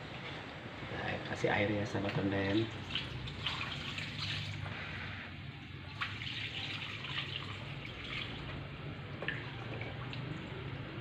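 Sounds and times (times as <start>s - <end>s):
water pouring into a pot: 2.6s - 10.8s.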